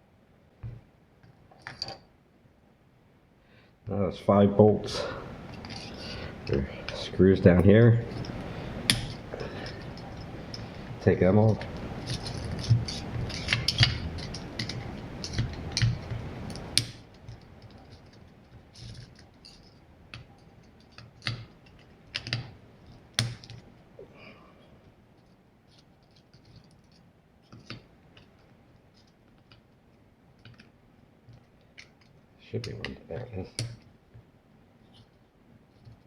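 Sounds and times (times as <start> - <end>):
tools clicking on metal: 8.2 - 10.8, 11.5 - 22.4.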